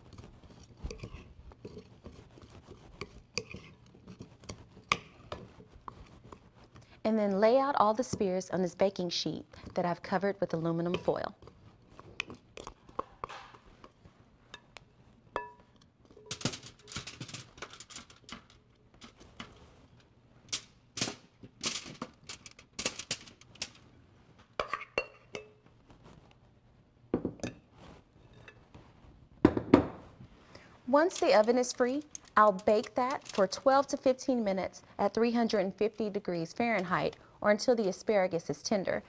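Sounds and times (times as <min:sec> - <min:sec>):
kitchenware clinking: 0:15.4 - 0:18.5, 0:24.6 - 0:25.6
taps and crinkles of foil: 0:16.2 - 0:19.6, 0:20.6 - 0:23.8, 0:31.1 - 0:34.0.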